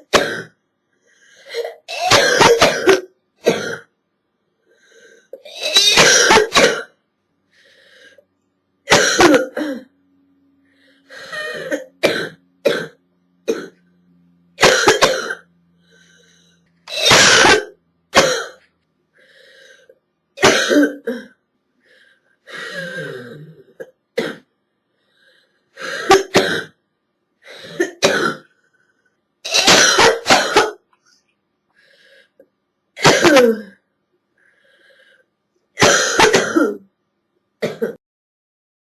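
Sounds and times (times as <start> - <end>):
girl coughing: 1.6 - 3.9, 5.4 - 7.0, 8.9 - 9.9, 11.3 - 13.8, 14.6 - 15.4, 16.9 - 18.6, 20.4 - 21.4, 25.9 - 26.8, 27.6 - 28.5, 29.5 - 30.8, 33.0 - 33.8, 35.8 - 36.9, 37.6 - 38.0.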